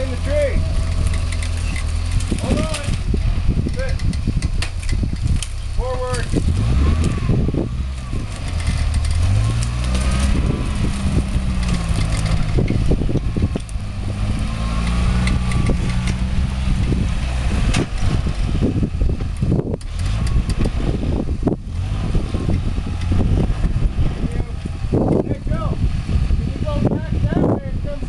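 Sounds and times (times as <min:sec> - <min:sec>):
branches cracking and snapping: 0:00.0 - 0:18.4
off-road vehicle engine revving: 0:00.0 - 0:28.0.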